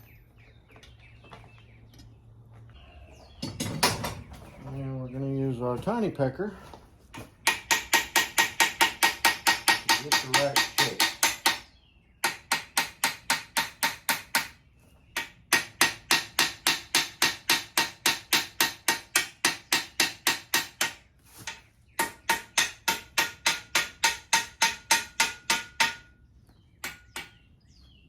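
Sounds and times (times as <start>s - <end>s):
hammer striking steel on anvil: 7.5s - 11.6s, 15.2s - 26.2s, 26.8s - 27.4s.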